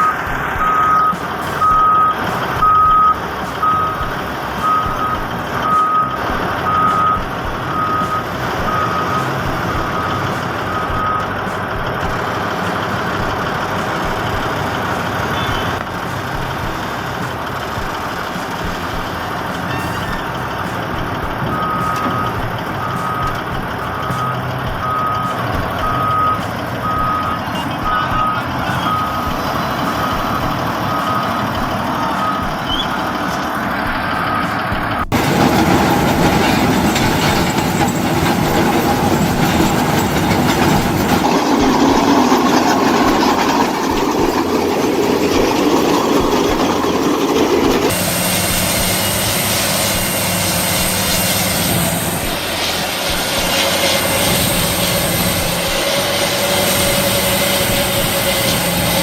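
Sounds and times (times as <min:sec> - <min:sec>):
backup alarm beeping: 0:00.0 - 0:12.3, 0:18.6 - 0:49.2
diesel engine running: 0:00.0 - 0:59.0.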